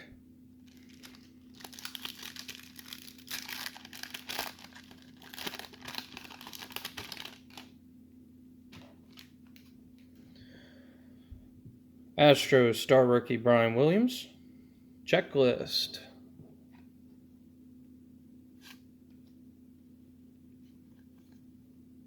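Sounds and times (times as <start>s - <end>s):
wrapper crinkling and tearing: 0.7s - 7.7s, 8.8s - 9.3s.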